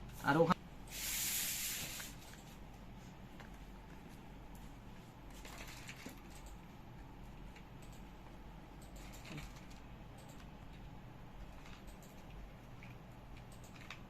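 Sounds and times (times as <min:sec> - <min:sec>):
low steady hum: 0:00.0 - 0:14.0
faint scattered clicks: 0:07.4 - 0:08.1.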